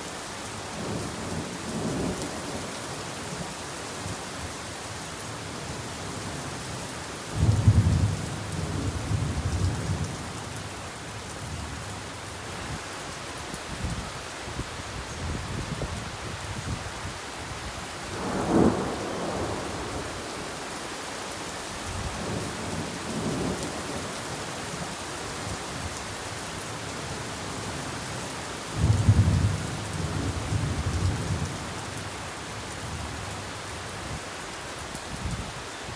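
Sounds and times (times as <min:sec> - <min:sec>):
steady rain falling: 0:00.0 - 0:35.9
thunder rumbling: 0:18.1 - 0:20.8.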